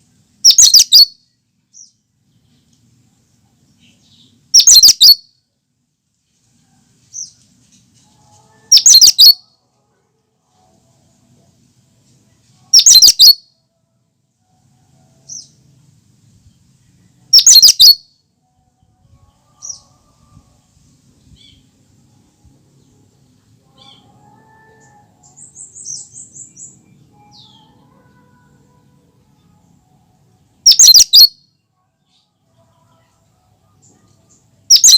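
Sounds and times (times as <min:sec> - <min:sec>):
bird calling with high notes: 0:00.4 - 0:01.1, 0:04.5 - 0:05.2, 0:08.7 - 0:09.4, 0:12.7 - 0:13.4, 0:17.3 - 0:18.0, 0:30.6 - 0:31.3, 0:34.7 - 0:34.9.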